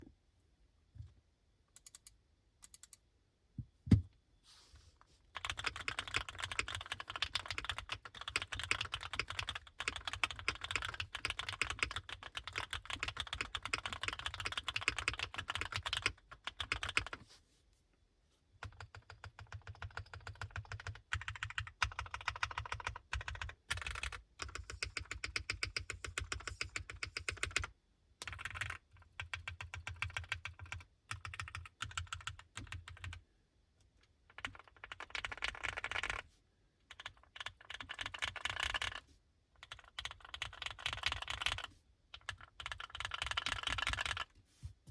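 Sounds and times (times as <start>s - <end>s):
heavy keyboard thump: 3.6s - 4.2s
mechanical keyboard typing: 5.4s - 17.2s, 18.6s - 33.2s, 34.3s - 36.2s, 36.8s - 44.3s.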